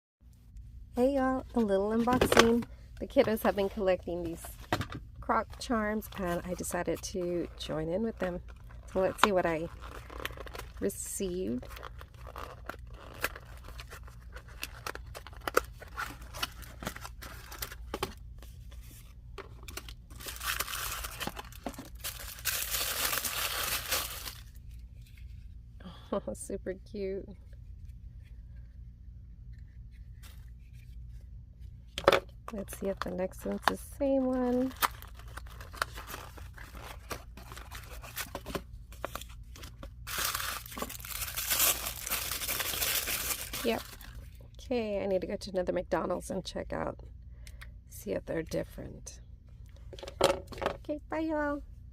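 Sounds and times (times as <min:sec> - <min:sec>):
plastic packaging crinkling: 0:07.5 - 0:18.2, 0:19.5 - 0:24.8, 0:34.2 - 0:44.4
packaging ripping: 0:08.5 - 0:10.8, 0:11.6 - 0:17.9, 0:19.7 - 0:24.6, 0:34.5 - 0:38.4, 0:39.1 - 0:44.2.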